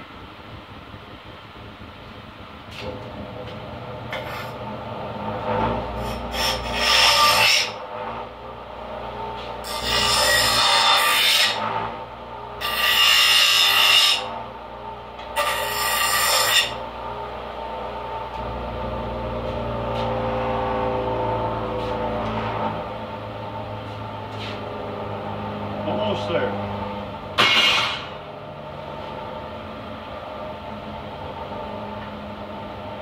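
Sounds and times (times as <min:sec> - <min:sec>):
metal filing by hand: 0:05.6 - 0:07.8, 0:09.6 - 0:11.8, 0:12.6 - 0:14.3, 0:15.4 - 0:16.8.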